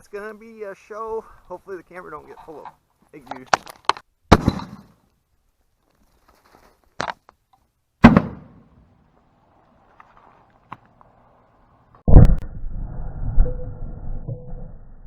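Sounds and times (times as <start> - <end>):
airbag firing bang: 8.0 - 8.9.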